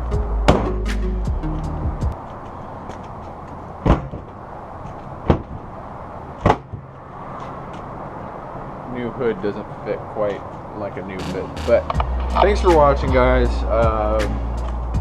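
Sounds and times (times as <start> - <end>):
background music: 0.0 - 2.2, 11.2 - 15.0.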